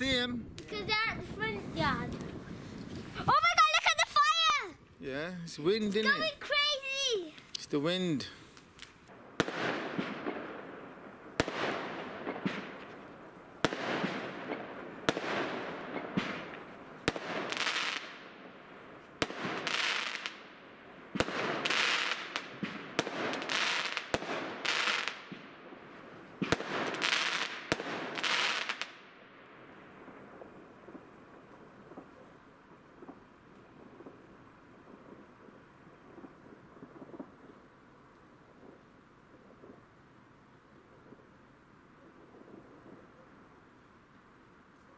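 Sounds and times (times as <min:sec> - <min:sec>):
fireworks cracking: 0:00.0 - 0:44.9
hissing crackling fireworks bursts: 0:00.0 - 0:44.9.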